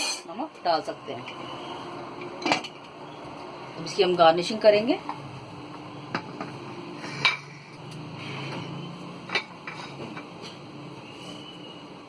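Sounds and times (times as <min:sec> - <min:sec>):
utensils clinking against dishes: 0:00.0 - 0:00.4, 0:08.5 - 0:10.3.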